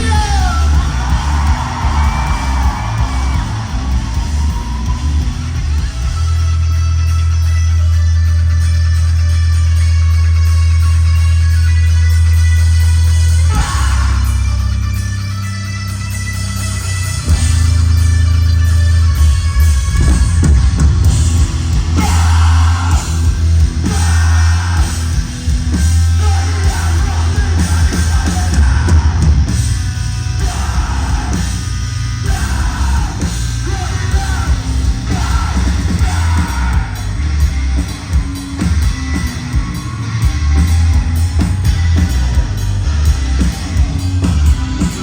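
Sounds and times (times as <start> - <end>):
singer yelling and singing: 0.0 - 5.8, 13.2 - 14.7, 21.7 - 29.7, 30.3 - 37.9
live rock band playing: 0.0 - 45.0.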